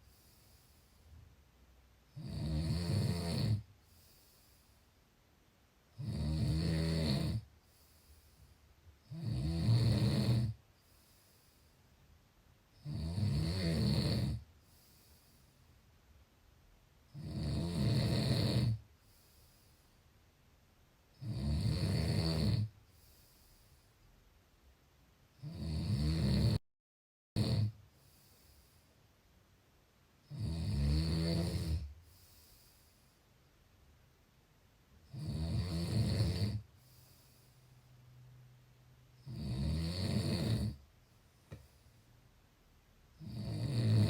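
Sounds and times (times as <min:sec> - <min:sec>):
quiet breathing: 0:00.0 - 0:02.2, 0:03.5 - 0:06.0, 0:07.3 - 0:09.2, 0:10.3 - 0:12.9, 0:14.3 - 0:17.2, 0:18.7 - 0:21.2, 0:22.6 - 0:25.4, 0:27.7 - 0:30.4, 0:31.8 - 0:35.1, 0:36.4 - 0:39.3, 0:40.7 - 0:44.0
person snoring: 0:02.2 - 0:03.7, 0:06.0 - 0:07.5, 0:09.1 - 0:10.6, 0:12.8 - 0:14.4, 0:17.1 - 0:18.8, 0:21.2 - 0:22.7, 0:25.4 - 0:26.6, 0:27.4 - 0:27.8, 0:30.3 - 0:31.9, 0:35.1 - 0:36.7, 0:39.2 - 0:40.8, 0:43.2 - 0:44.0.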